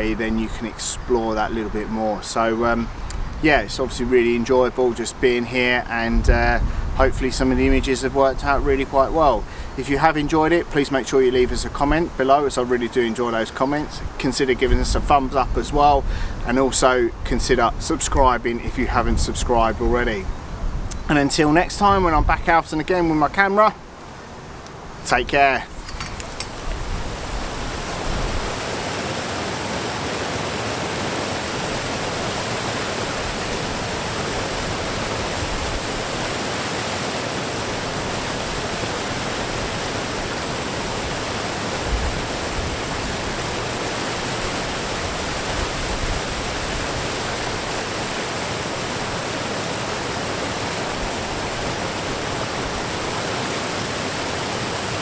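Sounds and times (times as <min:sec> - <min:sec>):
waterfall rushing: 0:21.1 - 0:55.0.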